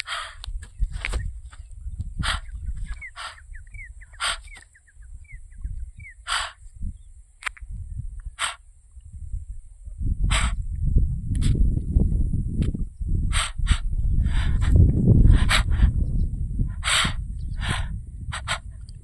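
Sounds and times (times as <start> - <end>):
harsh bird calls: 0.0 - 7.3, 8.2 - 8.8, 10.2 - 10.7, 13.3 - 18.8
high-pitched insect hum: 0.0 - 18.8.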